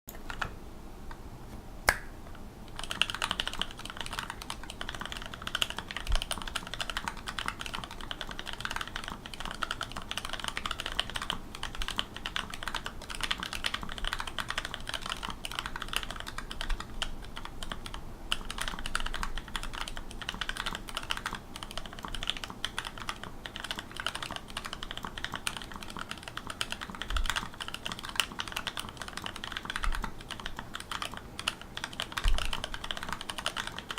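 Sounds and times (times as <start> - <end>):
mechanical keyboard typing: 0.1 - 0.6, 2.7 - 33.9.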